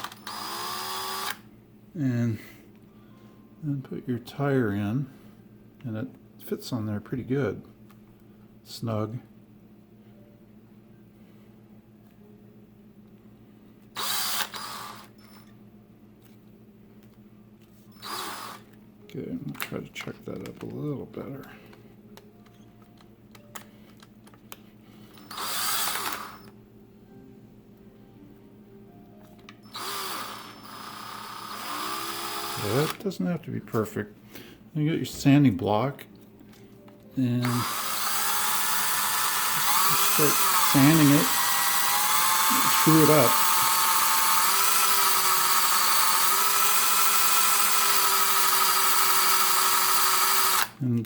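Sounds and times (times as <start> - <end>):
electric drill spinning: 0.0 - 1.5, 14.0 - 15.6, 17.9 - 18.8, 25.0 - 26.5, 29.6 - 33.0, 37.4 - 50.8.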